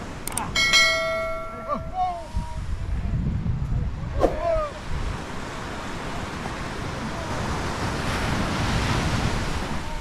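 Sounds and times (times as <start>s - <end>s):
wind rumbling on microphone: 0.0s - 10.0s
sea waves breaking: 4.2s - 10.0s.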